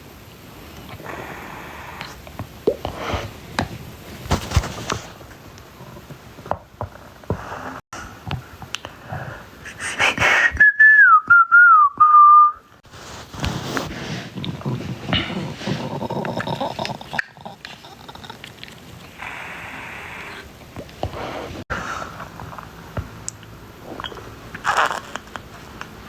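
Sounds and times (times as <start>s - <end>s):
stomach gurgling: 0.7s - 9.9s, 13.5s - 26.0s
stomach squealing: 0.8s - 3.4s, 14.0s - 21.6s, 23.8s - 25.6s.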